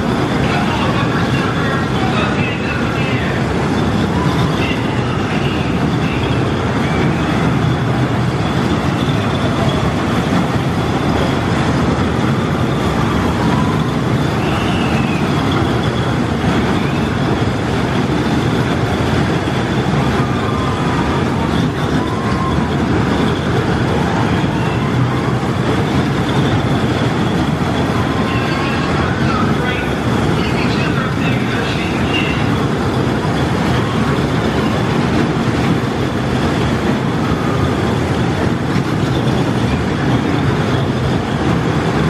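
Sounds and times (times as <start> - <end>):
amusement ride rumbling: 0.0 - 42.0
faint voices: 0.1 - 7.5, 27.8 - 32.9.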